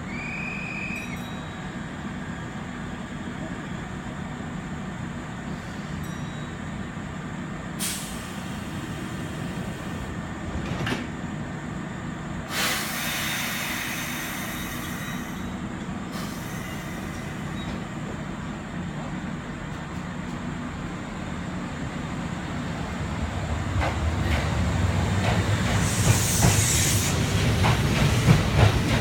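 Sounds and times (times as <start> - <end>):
electric train humming: 0.0 - 29.0
air brakes hissing: 5.4 - 6.1, 7.8 - 10.1, 12.5 - 18.0, 25.7 - 27.4
train clunks: 7.8 - 11.3, 12.4 - 20.9, 23.5 - 29.0.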